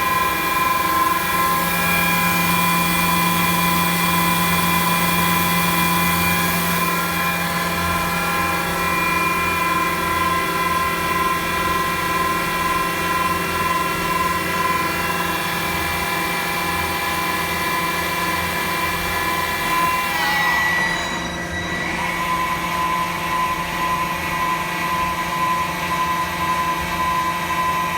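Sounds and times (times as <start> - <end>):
lathe machine whine: 0.0 - 27.9
mechanical hum: 0.0 - 27.9.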